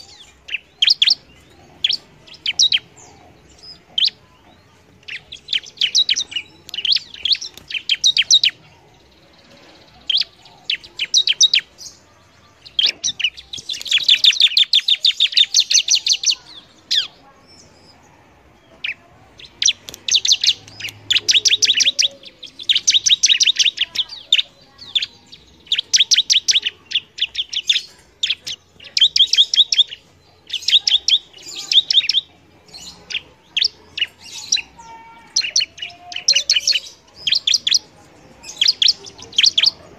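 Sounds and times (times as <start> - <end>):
bird singing high sharp notes: 0.0 - 4.2, 5.0 - 8.6, 18.8 - 39.8.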